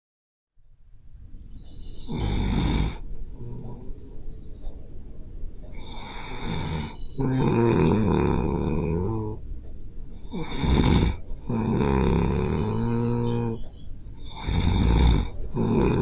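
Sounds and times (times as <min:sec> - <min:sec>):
person snoring: 0:02.1 - 0:03.9, 0:05.8 - 0:09.4, 0:10.3 - 0:13.6, 0:14.2 - 0:16.0.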